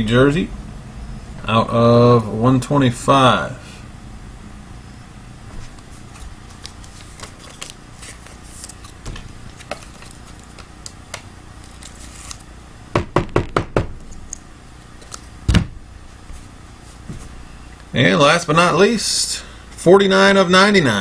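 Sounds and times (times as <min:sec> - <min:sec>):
knocks on tabletop: 0:13.0 - 0:13.9.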